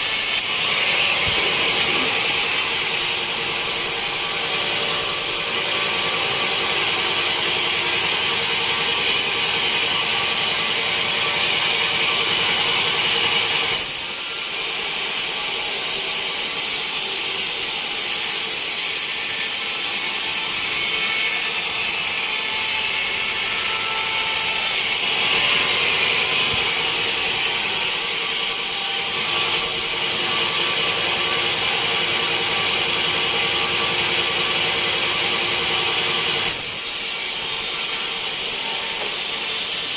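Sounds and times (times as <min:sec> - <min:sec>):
band saw cutting log: 0:00.0 - 0:39.9.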